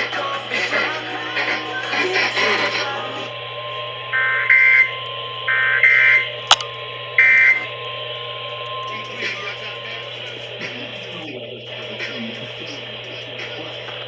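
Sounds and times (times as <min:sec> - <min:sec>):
sharp click: 0:06.5 - 0:06.7.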